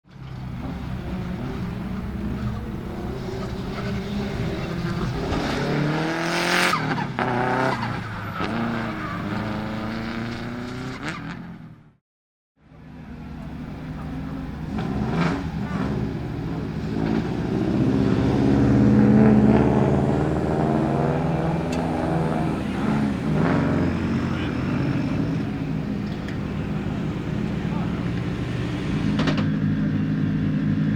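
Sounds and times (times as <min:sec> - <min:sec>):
rally car engine revving: 0:00.1 - 0:11.9, 0:13.0 - 0:30.9
engine sharp cracks: 0:20.6 - 0:29.9.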